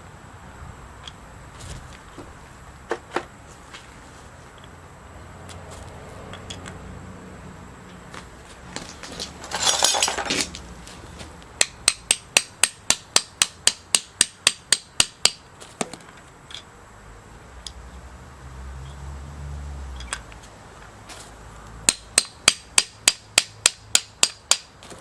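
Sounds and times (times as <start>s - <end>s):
scraping rattle: 8.7s - 10.6s
hammer tapping on metal: 11.6s - 15.4s.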